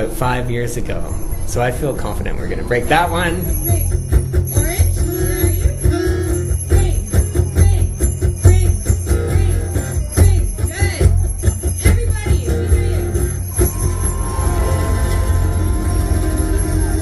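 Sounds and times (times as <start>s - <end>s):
bicycle bells ringing: 3.3s - 17.0s
music: 3.4s - 17.0s.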